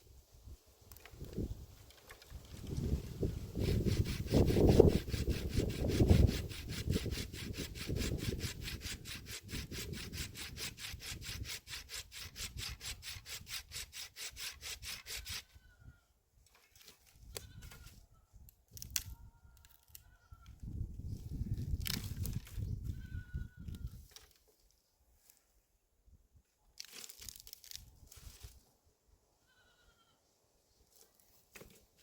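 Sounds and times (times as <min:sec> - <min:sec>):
saw cutting wood: 0:02.5 - 0:15.6
faint goat bleats: 0:29.4 - 0:30.3.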